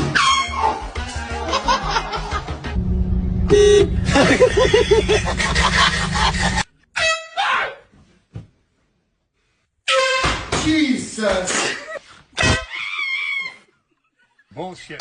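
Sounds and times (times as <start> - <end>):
air horn blasting: 2.8 - 7.2.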